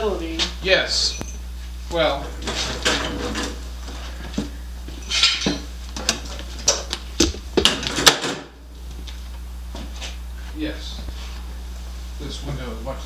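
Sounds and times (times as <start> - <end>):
metal pieces clanking: 5.1 - 5.6.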